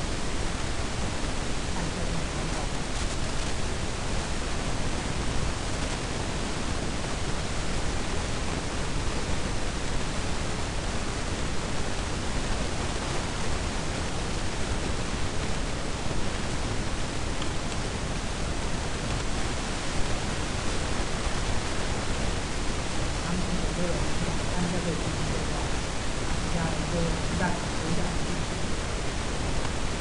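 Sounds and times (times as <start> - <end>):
steady background hiss: 0.0 - 30.0.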